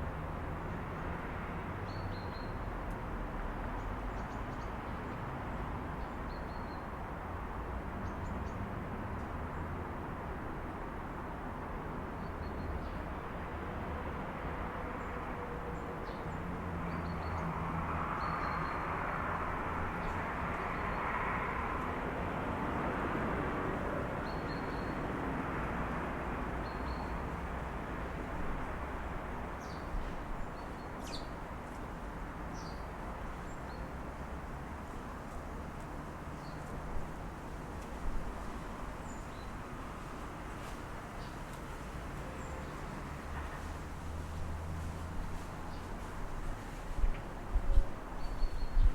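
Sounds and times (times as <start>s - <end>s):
traffic rumble: 14.6s - 48.9s.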